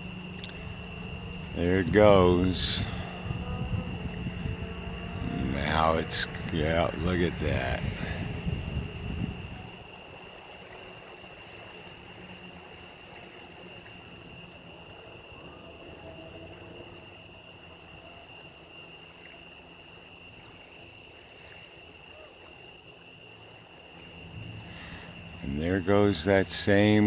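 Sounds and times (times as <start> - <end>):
faint low rumble: 0.0 - 10.0, 24.0 - 27.0
insects trilling: 0.0 - 27.0.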